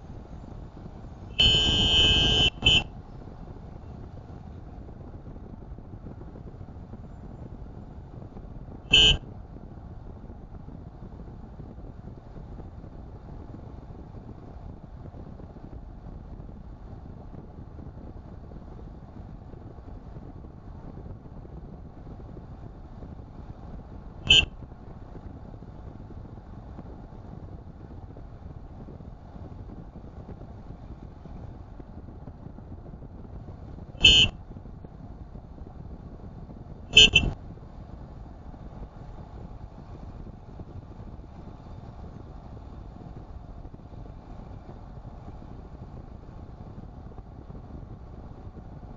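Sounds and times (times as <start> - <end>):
car cabin road rumble: 0.0 - 48.9
car horn honk: 1.3 - 2.9, 8.9 - 9.2, 24.3 - 24.5, 34.0 - 34.3, 36.9 - 37.4.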